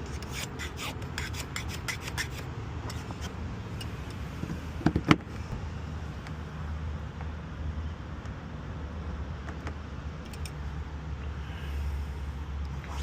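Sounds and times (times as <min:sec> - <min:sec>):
small tool clicks and scraping: 0:00.0 - 0:04.2, 0:10.2 - 0:10.6
steady low hum: 0:00.0 - 0:13.0.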